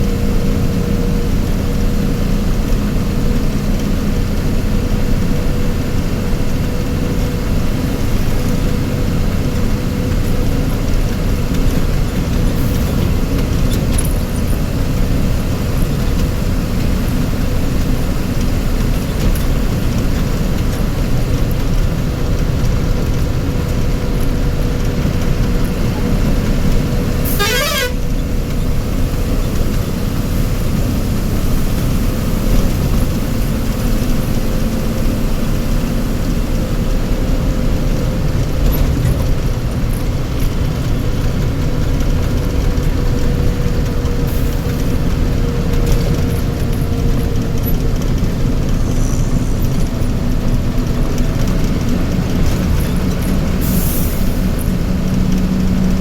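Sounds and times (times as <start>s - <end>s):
vehicle engine running with whine: 0.0s - 56.0s
vehicle horn: 27.2s - 28.2s.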